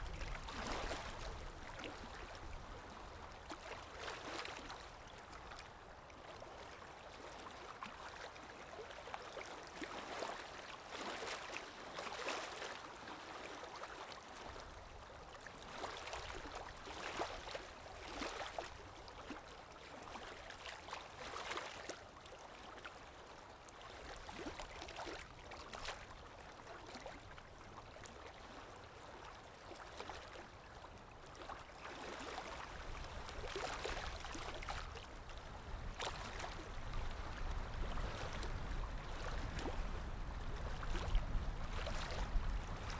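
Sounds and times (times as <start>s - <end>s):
stream gurgling and splashing: 0.0s - 42.9s.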